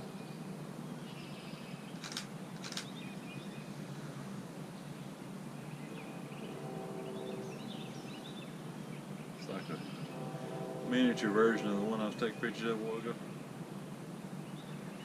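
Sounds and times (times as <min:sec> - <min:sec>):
steady outdoor hum: 0:00.0 - 0:15.0
camera shutter clicks: 0:02.0 - 0:02.9.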